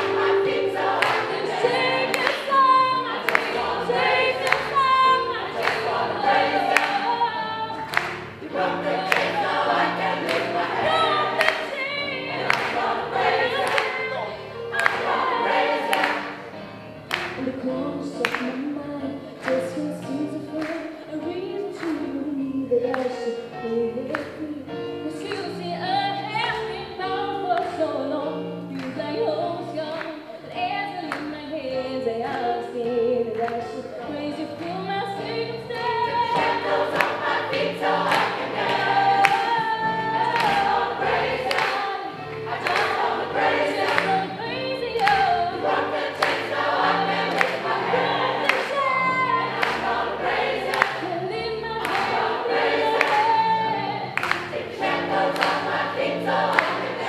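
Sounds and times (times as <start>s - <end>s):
gospel choir singing: 0.0s - 22.2s, 33.6s - 57.0s.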